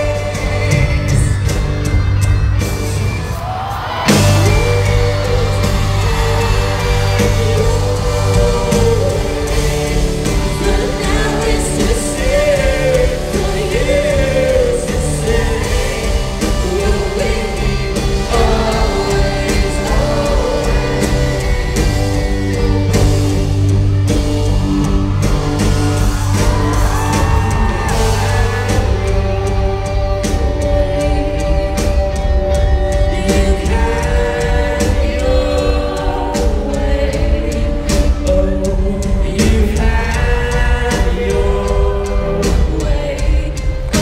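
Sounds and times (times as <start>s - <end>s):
person singing: 0.0s - 1.6s, 3.2s - 44.0s
steady drums: 0.0s - 44.0s
sustained bass notes: 0.0s - 44.0s.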